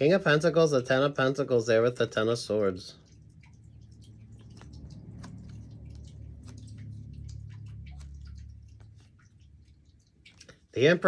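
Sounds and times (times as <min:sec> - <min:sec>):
low rumble: 0:03.1 - 0:10.1.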